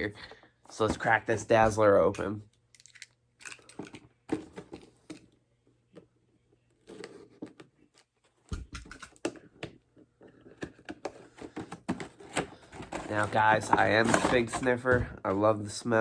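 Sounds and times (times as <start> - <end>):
box being opened by hand: 10.3 - 14.8.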